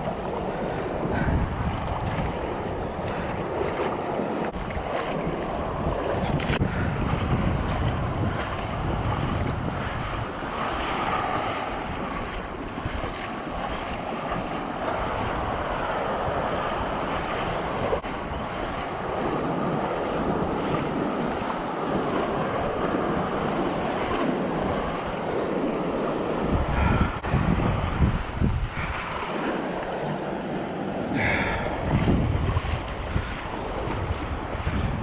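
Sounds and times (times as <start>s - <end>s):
wind buffeting microphone: 0.0s - 35.0s.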